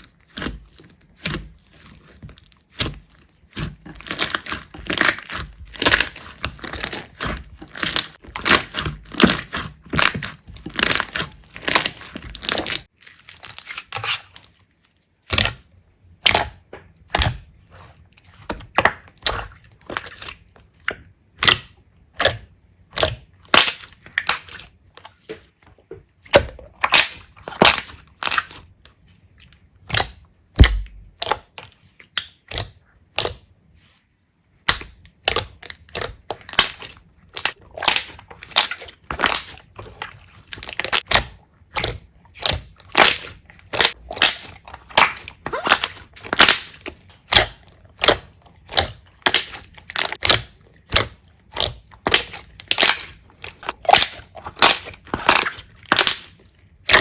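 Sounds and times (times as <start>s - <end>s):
slime crackling and popping: 0.1s - 14.2s, 26.3s - 28.7s, 34.5s - 57.0s.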